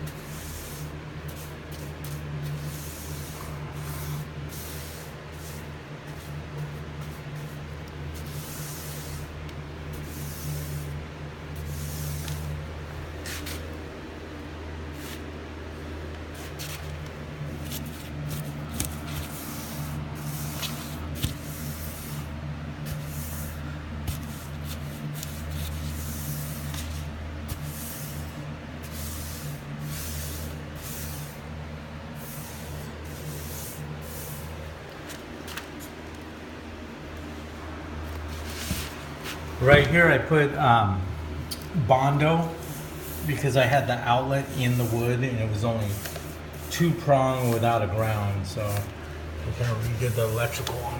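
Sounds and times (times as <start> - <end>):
steady low hum: 0.0 - 50.9
paintbrush swishing on wood: 0.2 - 10.9, 11.6 - 12.5, 13.2 - 13.7, 14.9 - 15.3, 17.6 - 31.5, 32.2 - 36.0, 38.1 - 40.0, 42.5 - 50.9.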